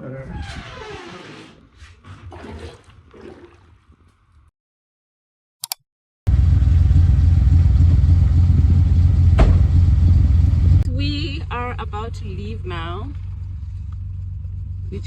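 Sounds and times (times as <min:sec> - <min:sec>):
car engine rumbling: 0:06.3 - 0:15.0.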